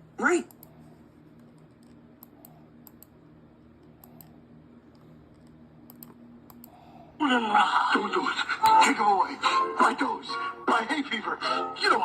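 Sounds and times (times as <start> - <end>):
low steady hum: 0.0 - 12.0
faint irregular clicks: 1.3 - 6.8.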